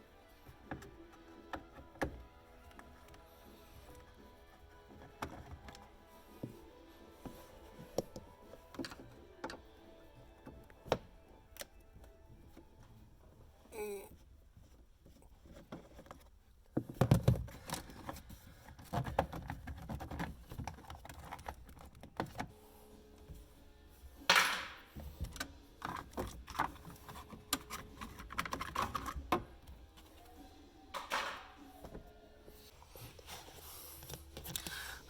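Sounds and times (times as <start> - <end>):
clicks and knocks of handling: 14.6 - 22.5, 24.3 - 30.1.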